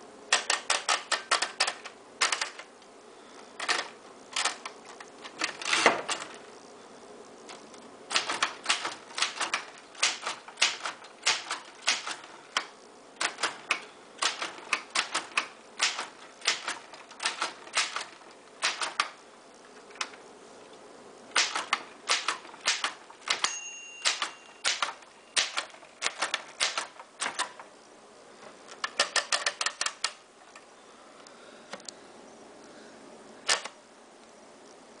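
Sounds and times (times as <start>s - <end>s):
typewriter keys clacking: 0.3s - 2.7s, 3.6s - 6.3s, 8.1s - 19.2s, 21.4s - 27.6s, 28.8s - 30.2s
typewriter bell ring: 22.8s - 26.9s.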